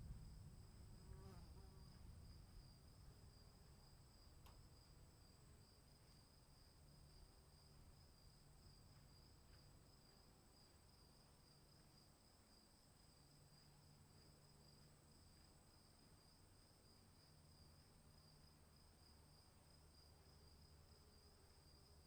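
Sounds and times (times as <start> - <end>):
low storm rumble: 0.0 - 5.3.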